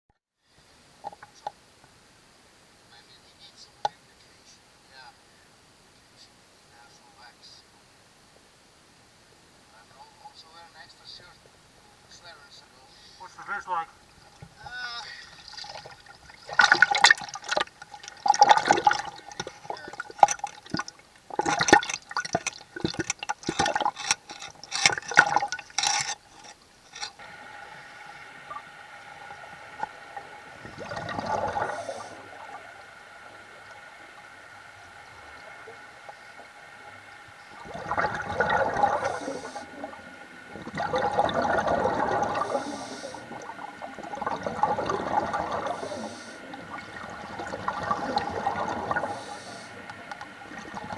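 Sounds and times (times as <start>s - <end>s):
underwater bubbling and rushing water: 11.6s - 50.9s
exhaled bubbles from regulator: 14.2s - 25.9s, 26.9s - 50.9s.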